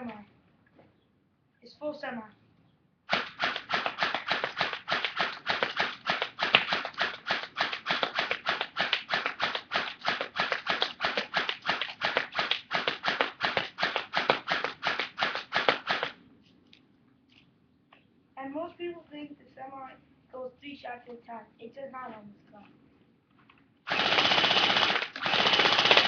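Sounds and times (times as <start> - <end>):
airsoft rifle shots: 3.1 - 16.2, 23.9 - 26.0.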